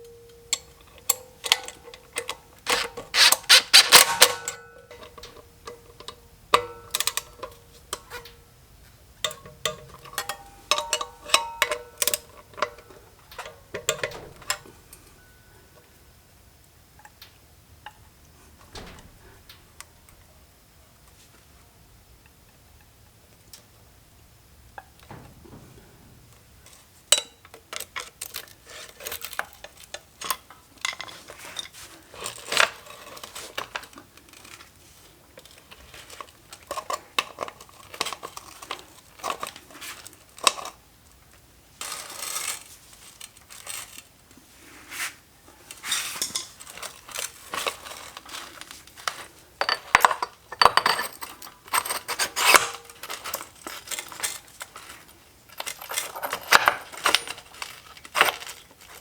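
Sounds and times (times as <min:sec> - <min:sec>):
metal tools clinking: 0:02.7 - 0:05.4, 0:46.2 - 0:59.0.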